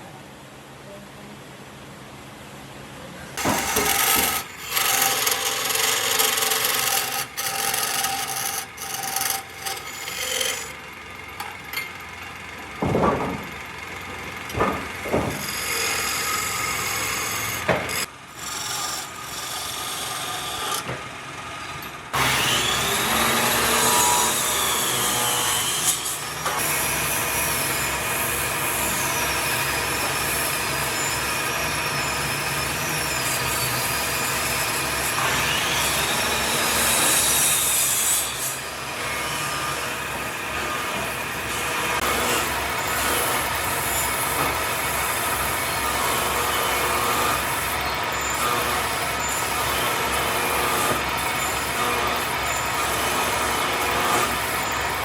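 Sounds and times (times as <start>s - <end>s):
tools cutting and rasping wood: 3.4s - 12.1s, 14.4s - 21.0s, 22.1s - 55.0s
sharp knocks: 12.8s - 13.6s, 14.5s - 15.6s.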